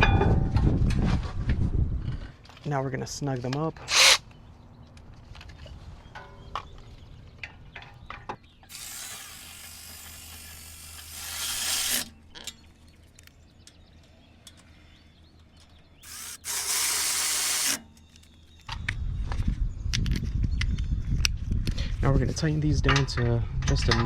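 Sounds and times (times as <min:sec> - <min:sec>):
fast ratcheting: 0:03.9 - 0:04.2, 0:08.7 - 0:12.1, 0:16.0 - 0:17.8.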